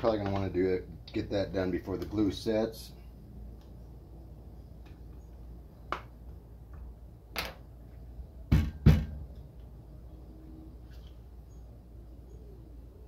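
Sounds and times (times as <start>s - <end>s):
sharp knocks on speaker housing: 8.5s - 9.3s.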